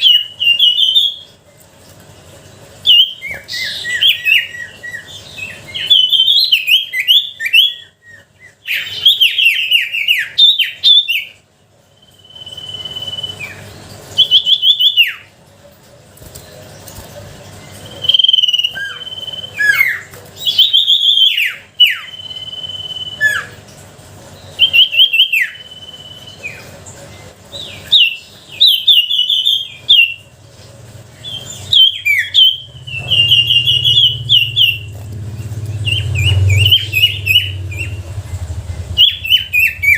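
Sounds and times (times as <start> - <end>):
bird singing whistles and trills: 0.0 - 1.4, 2.8 - 15.3, 17.8 - 23.6, 24.4 - 26.7, 27.5 - 30.3, 31.2 - 38.2, 38.8 - 39.9
low hum: 32.4 - 39.9.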